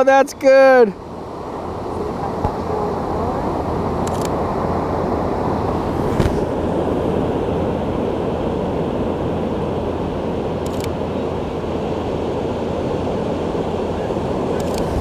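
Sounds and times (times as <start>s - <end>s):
ocean surf: 0.0s - 15.0s
wind: 0.0s - 15.0s
sharp click: 4.0s - 4.4s, 14.6s - 15.0s.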